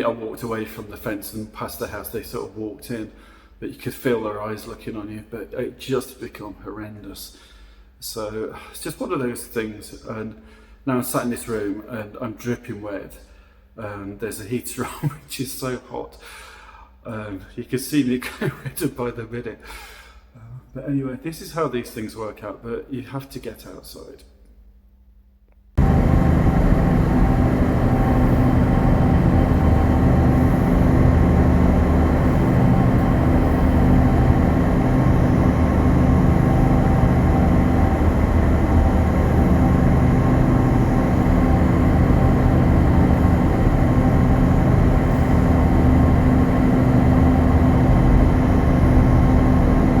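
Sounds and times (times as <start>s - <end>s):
heavy engine drone: 25.8s - 50.0s
low hum: 25.8s - 50.0s
steady tones: 25.8s - 50.0s.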